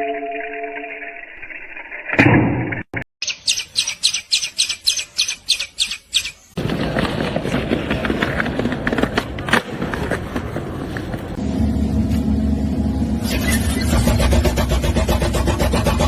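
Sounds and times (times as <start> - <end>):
high bird-like chirps: 3.2 - 6.6.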